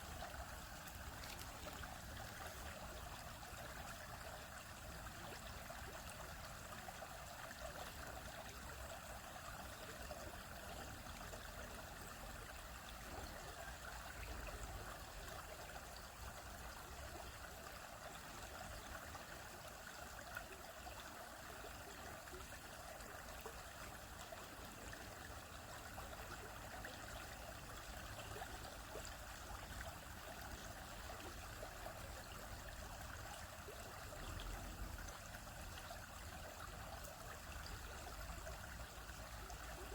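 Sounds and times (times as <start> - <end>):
stream babbling over rocks: 0.0 - 39.9.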